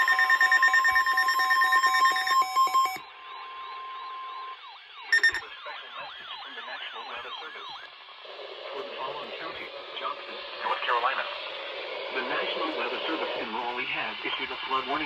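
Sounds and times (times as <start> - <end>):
digital data bursts: 0.0 - 3.0, 5.1 - 7.9
siren-like alarm sweeping: 0.0 - 8.0
steady alert tone: 5.2 - 5.4.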